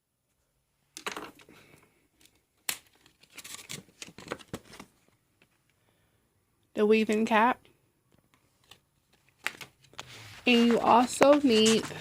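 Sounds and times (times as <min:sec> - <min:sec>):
craft supplies crinkling and rustling: 0:01.0 - 0:05.6, 0:08.4 - 0:12.0.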